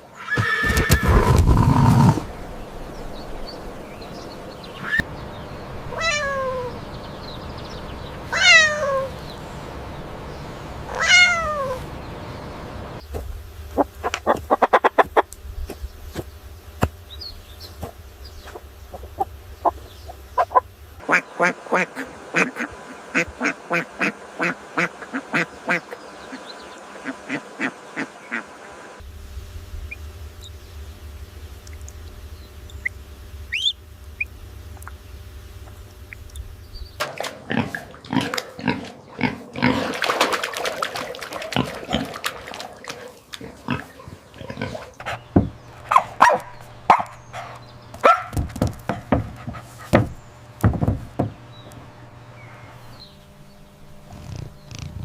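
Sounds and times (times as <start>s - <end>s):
rapid clicking animal calls: 0.0s - 12.0s, 13.6s - 28.6s, 29.8s - 53.1s, 54.0s - 55.0s
falling animal calls: 0.0s - 12.1s, 17.8s - 28.8s
short animal calls: 5.8s - 7.2s, 8.2s - 9.3s, 10.8s - 11.9s.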